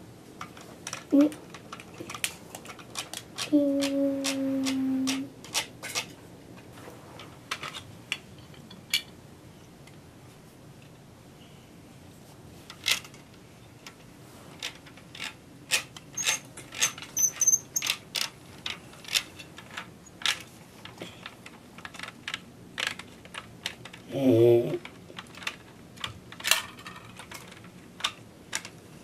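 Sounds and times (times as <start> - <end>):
plastic toy pieces clicking: 0.4 - 6.1, 14.6 - 24.1, 24.8 - 28.8.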